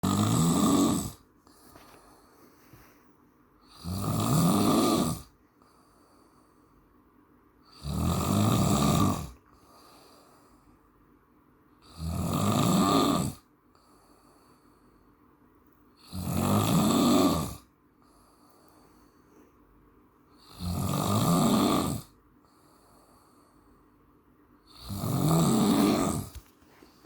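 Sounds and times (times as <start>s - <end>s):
man snoring: 0.0s - 1.6s, 3.6s - 5.4s, 7.6s - 10.3s, 11.8s - 14.0s, 16.0s - 17.7s, 20.4s - 23.1s, 24.7s - 26.4s.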